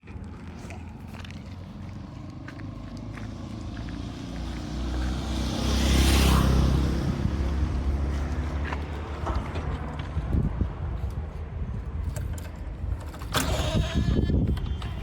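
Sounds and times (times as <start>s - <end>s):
diesel engine running: 0.0s - 11.1s.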